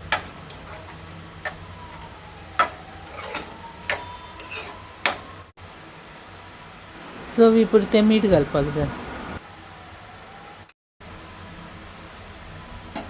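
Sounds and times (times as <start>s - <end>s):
spoon stirring thick curry: 2.6s - 4.8s.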